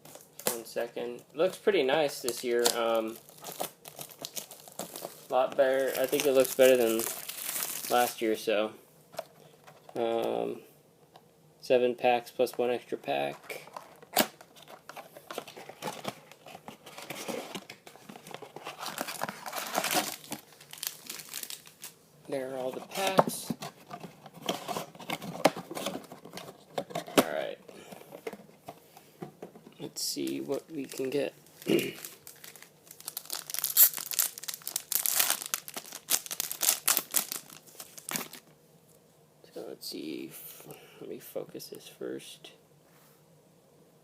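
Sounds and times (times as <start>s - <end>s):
card packs crinkling and rustling: 0.0s - 8.5s, 12.4s - 38.5s.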